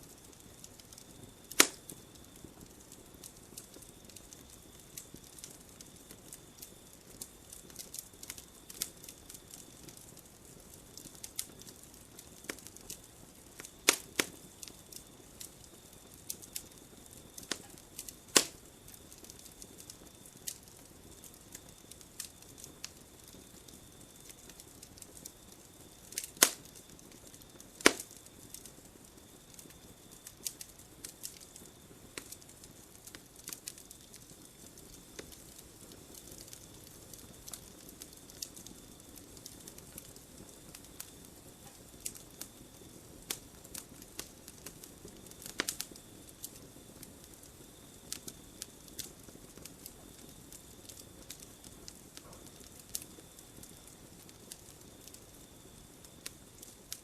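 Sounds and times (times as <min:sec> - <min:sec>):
campfire crackling: 0:00.0 - 0:57.0
loud fire pops: 0:00.0 - 0:57.0.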